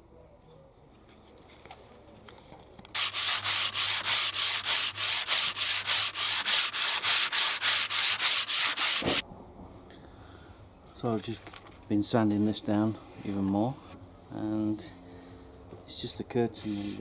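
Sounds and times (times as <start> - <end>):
sandpaper rasping on wood: 3.0 - 9.2.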